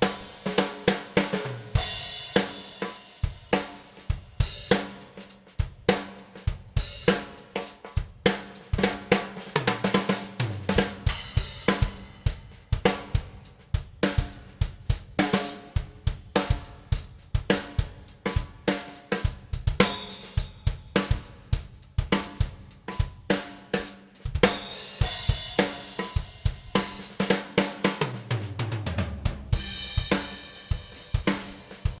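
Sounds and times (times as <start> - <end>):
drum kit beat: 0.0 - 32.0
tom fill: 24.4 - 32.0.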